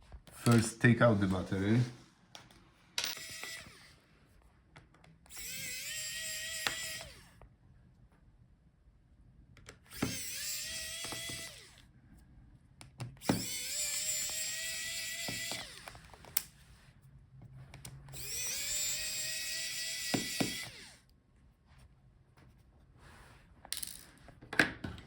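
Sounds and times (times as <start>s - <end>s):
electric screwdriver whining: 3.1s - 4.0s, 5.3s - 7.4s, 9.8s - 11.9s, 13.2s - 16.4s, 18.1s - 21.1s.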